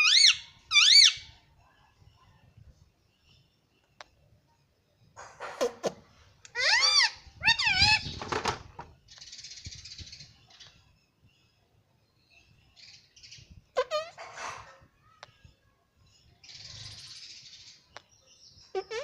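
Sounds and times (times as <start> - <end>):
parakeet calling: 0.0 - 1.3, 6.5 - 8.4, 13.8 - 14.2.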